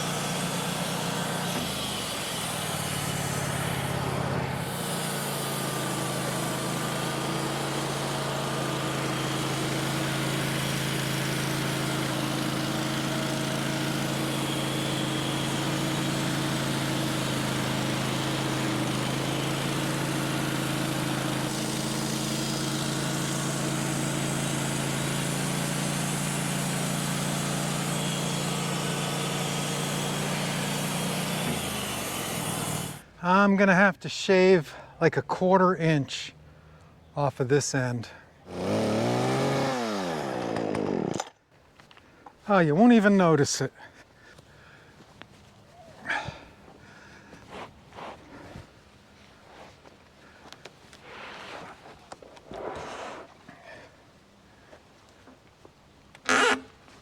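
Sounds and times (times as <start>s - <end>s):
sawmill engine running: 0.0s - 33.5s, 38.4s - 41.3s.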